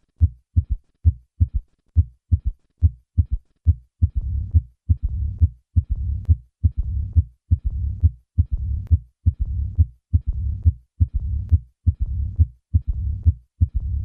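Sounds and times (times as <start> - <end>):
heartbeat sounds: 0.2 - 14.0
low-pitched heart murmur rumble: 4.0 - 14.0.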